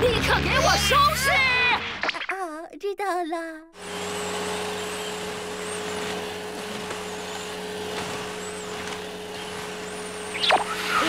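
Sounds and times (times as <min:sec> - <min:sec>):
vacuum cleaner running: 0:03.8 - 0:11.0.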